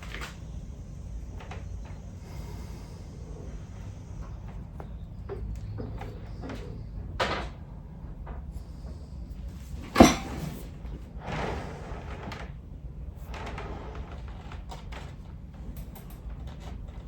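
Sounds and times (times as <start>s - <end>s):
small handling clicks and rustles: 13.4s - 17.0s.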